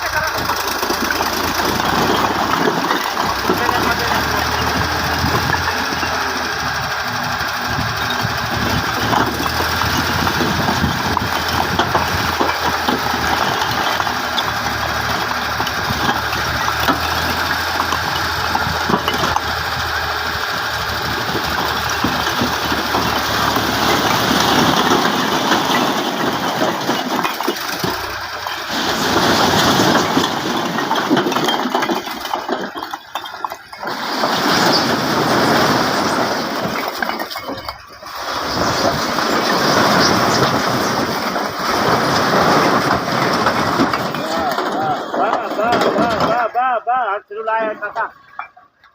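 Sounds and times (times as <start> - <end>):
engine running with low hum: 0.0 - 33.8.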